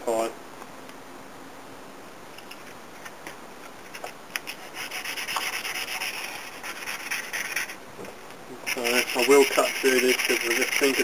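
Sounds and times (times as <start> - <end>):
wood sanding strokes: 4.5 - 7.8, 8.6 - 11.0.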